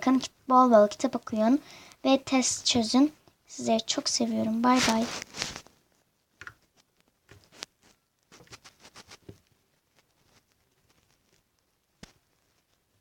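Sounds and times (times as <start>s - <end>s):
soft clicks and taps of handling: 6.4s - 12.8s.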